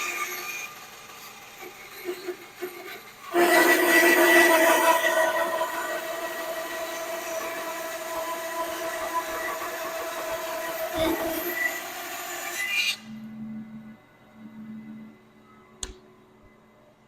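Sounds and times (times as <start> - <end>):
power saw drone: 0.0 - 13.8
dust collector hum: 3.1 - 13.1.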